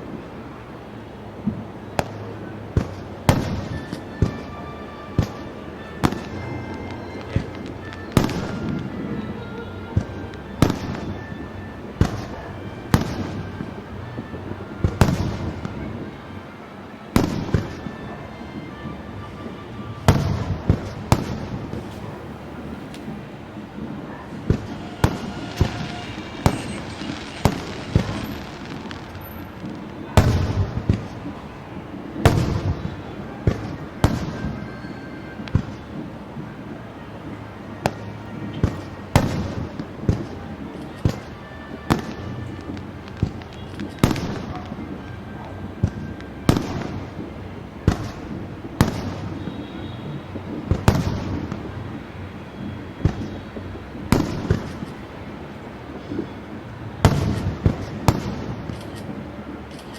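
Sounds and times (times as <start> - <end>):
fireworks bangs: 1.3 - 59.9
echoing rumble: 20.1 - 32.6.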